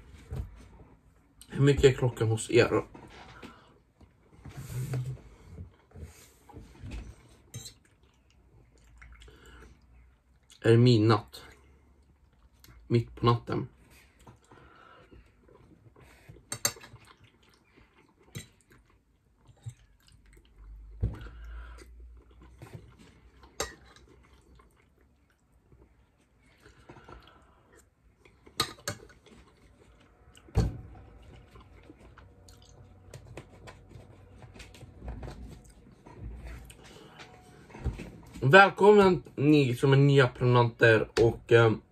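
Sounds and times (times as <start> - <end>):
chewing and eating: 5.7 - 10.6, 11.4 - 12.9, 13.9 - 37.4.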